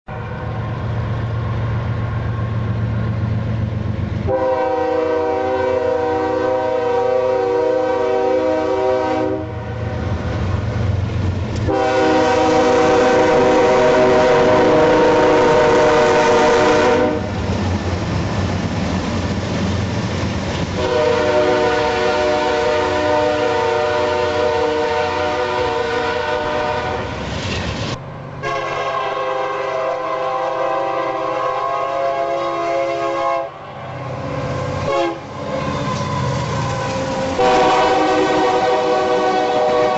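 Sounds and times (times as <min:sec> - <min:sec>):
locomotive air horn blasts: 0:00.0 - 0:00.6, 0:04.3 - 0:09.8, 0:11.6 - 0:17.3, 0:20.8 - 0:27.1, 0:28.4 - 0:33.6, 0:34.8 - 0:39.9
locomotive rumbling: 0:00.1 - 0:39.9
train wheels clickety-clack: 0:10.1 - 0:16.1, 0:17.2 - 0:23.0, 0:27.2 - 0:28.0, 0:34.7 - 0:39.9.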